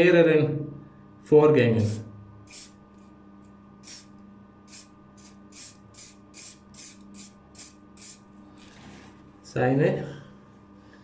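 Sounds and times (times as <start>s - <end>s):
aerosol spray can puffs: 1.9s - 2.8s, 3.8s - 4.1s, 4.7s - 8.9s.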